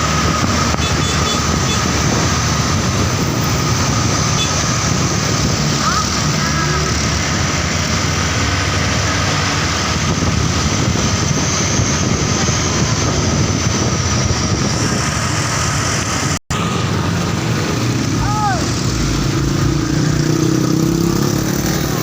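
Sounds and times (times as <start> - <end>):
heavy bus engine running: 0.0 - 22.0
street noise: 0.0 - 22.0.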